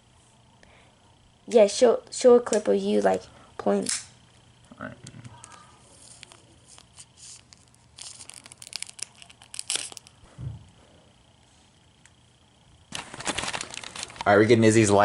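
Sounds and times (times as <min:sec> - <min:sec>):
plastic wrapping crinkling and tearing: 0:05.4 - 0:10.2, 0:12.9 - 0:14.5.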